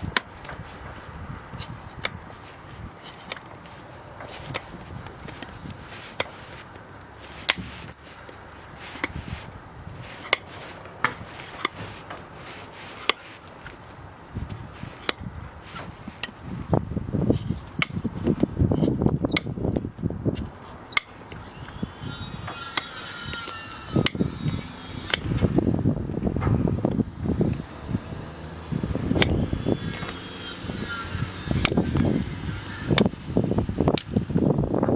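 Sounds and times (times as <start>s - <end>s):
low scraping and rustling: 0.0s - 34.9s
cutting tools snipping hoof: 3.0s - 14.0s, 17.4s - 25.6s, 26.9s - 33.2s.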